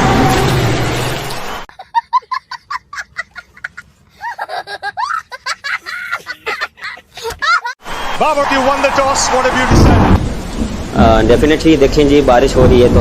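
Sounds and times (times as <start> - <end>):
loud noise: 0.0 - 1.7, 7.8 - 11.2
high-pitched laughter: 1.7 - 7.8.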